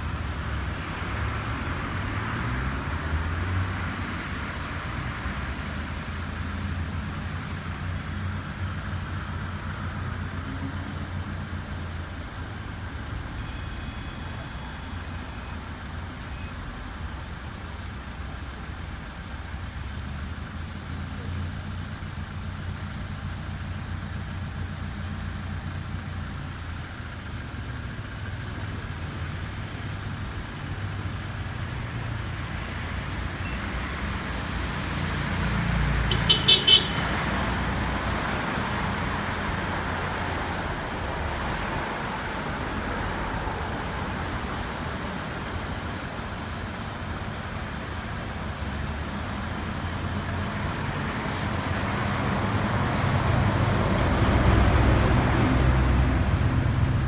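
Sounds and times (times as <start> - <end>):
vehicle engine and road rumble: 0.0 - 57.0
high-pitched horn toots: 36.1 - 37.1.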